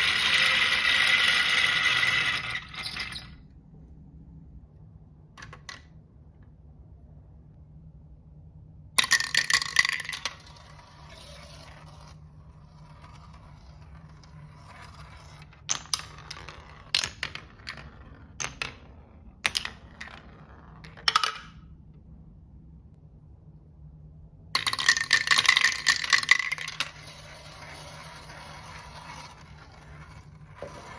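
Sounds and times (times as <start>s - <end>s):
marbles clacking: 0.0s - 3.4s, 9.0s - 12.2s, 12.8s - 21.6s, 24.6s - 30.9s
marbles clattering on wooden run: 0.0s - 3.4s, 9.0s - 12.0s, 13.0s - 21.6s, 24.6s - 30.9s
marbles rolling: 0.0s - 3.4s, 9.0s - 21.6s, 24.6s - 30.9s.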